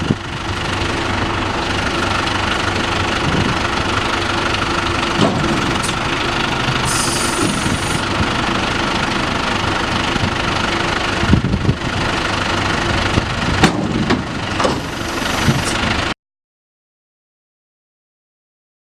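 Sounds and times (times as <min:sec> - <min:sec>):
tractor engine running: 0:00.0 - 0:16.2
sharp clanks and knocks: 0:05.1 - 0:06.0, 0:13.6 - 0:15.0
short high hiss: 0:06.9 - 0:08.0.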